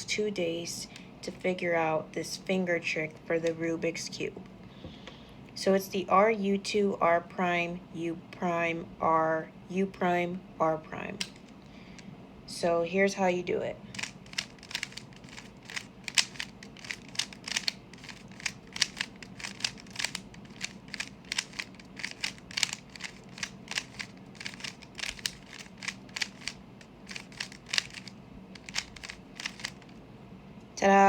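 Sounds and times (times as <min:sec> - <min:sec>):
plastic puzzle cube clicking: 0:13.9 - 0:30.0.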